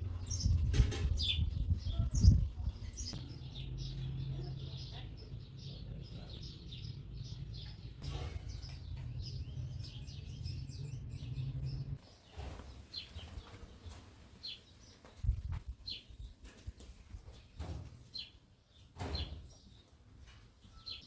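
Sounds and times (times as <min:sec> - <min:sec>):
low rumble: 0:00.0 - 0:12.0
small birds chirping: 0:00.0 - 0:21.0.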